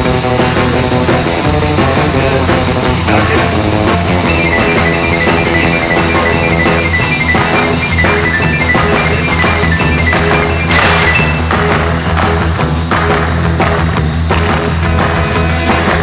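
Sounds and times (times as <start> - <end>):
rock music: 0.0 - 16.0
fast picked guitar notes: 2.7 - 12.1.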